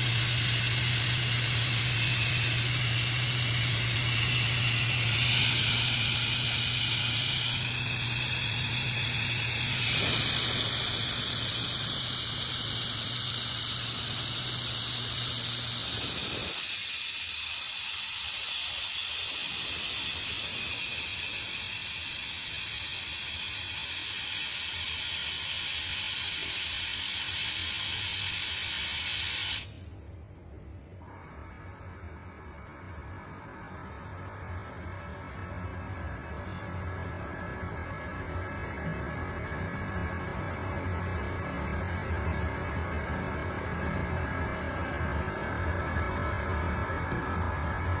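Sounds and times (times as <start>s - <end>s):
low machine hum: 0.0s - 26.8s, 29.7s - 48.0s
welding torch hissing and crackling: 0.0s - 29.8s.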